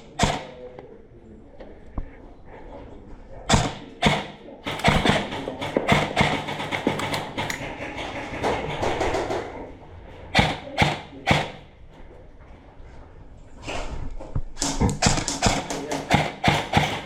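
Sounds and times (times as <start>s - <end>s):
airsoft gunshots: 0.0s - 0.7s, 3.5s - 8.0s, 10.4s - 11.7s, 14.6s - 17.0s
knocks: 3.5s - 9.7s.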